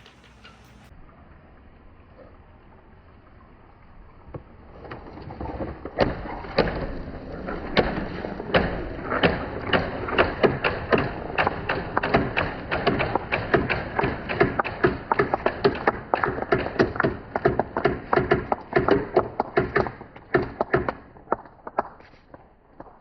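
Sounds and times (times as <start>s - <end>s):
balls clacking: 0.0s - 0.9s, 5.5s - 22.2s
balls rolling on wooden track: 4.3s - 22.0s.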